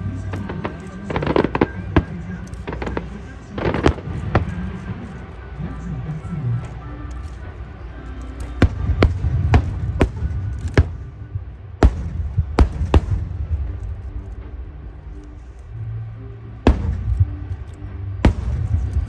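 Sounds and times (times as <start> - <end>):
low rumble: 0.0 - 19.0
fireworks booming: 0.4 - 5.0, 8.6 - 14.6, 16.6 - 19.0.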